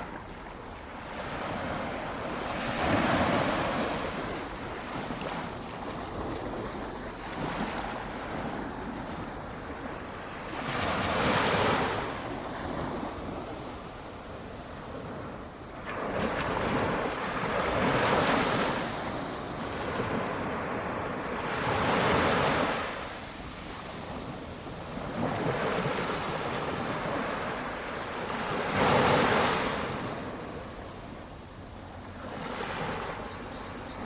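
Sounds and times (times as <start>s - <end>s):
small waves washing ashore: 0.0s - 34.0s.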